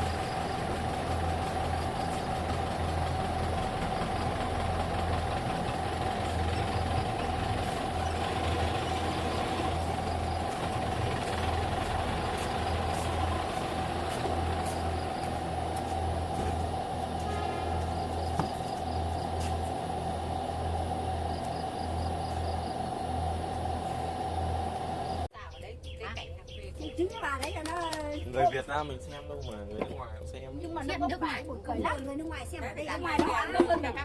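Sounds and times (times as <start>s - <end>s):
engine running steadily: 0.0s - 25.3s.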